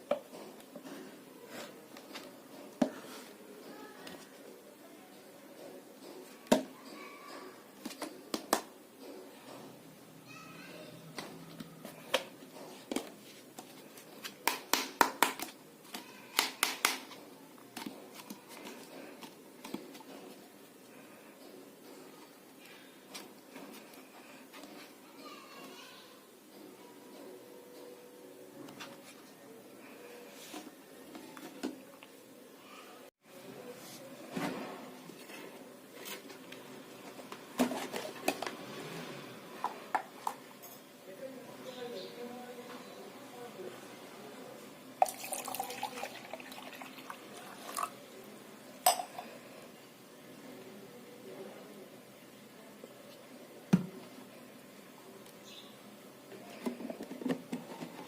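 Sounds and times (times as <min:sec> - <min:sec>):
clicks and taps of objects handled: 0:07.8 - 0:09.6, 0:11.1 - 0:20.3.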